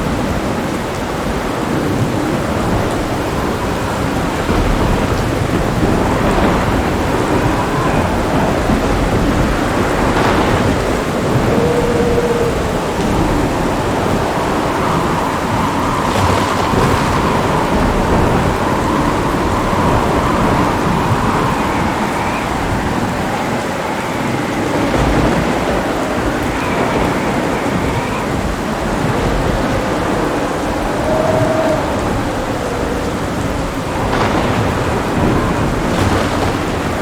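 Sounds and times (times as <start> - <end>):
heavy rain: 0.0 - 37.0
low thunder rumbling: 0.0 - 37.0.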